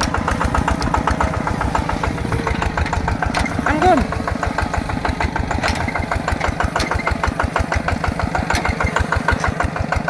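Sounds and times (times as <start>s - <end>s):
tractor diesel engine chuffing: 0.0s - 10.0s
sharp clicks: 5.5s - 7.2s.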